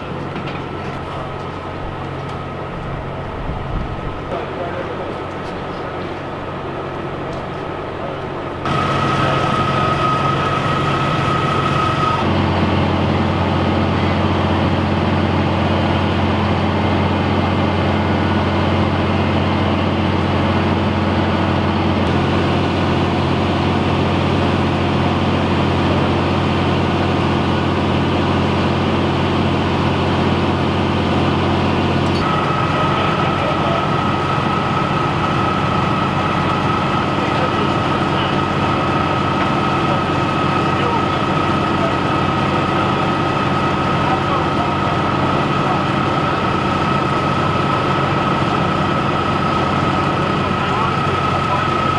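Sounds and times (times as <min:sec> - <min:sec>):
diesel engine running: 0:00.0 - 0:51.9
thin high whine: 0:08.5 - 0:27.7.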